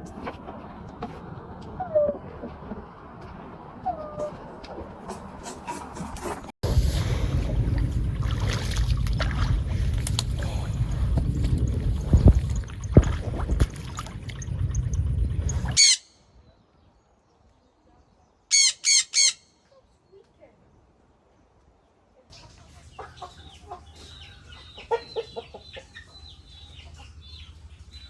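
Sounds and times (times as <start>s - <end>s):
loud high calls: 15.8s - 16.1s, 18.5s - 19.5s
chickens clucking: 22.3s - 27.9s
chicks peeping: 22.3s - 28.0s.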